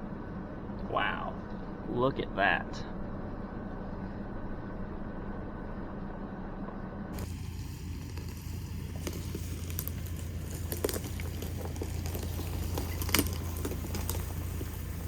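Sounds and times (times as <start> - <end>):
pickup engine low hum: 0.0 - 15.0
tyres crunching over rocks: 7.2 - 15.0.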